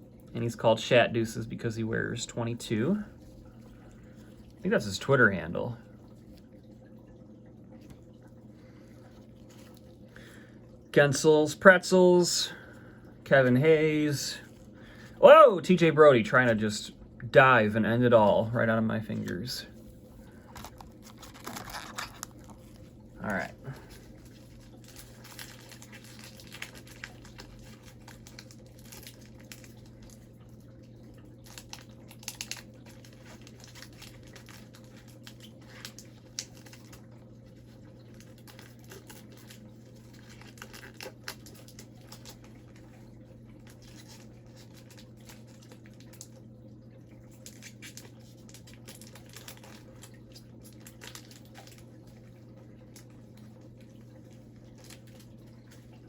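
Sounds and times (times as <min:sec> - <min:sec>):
low electrical hum: 0:00.0 - 0:56.0
wrapper tearing and crinkling: 0:20.6 - 0:22.7, 0:24.3 - 0:30.1, 0:31.4 - 0:37.0, 0:38.2 - 0:42.5, 0:47.4 - 0:51.8.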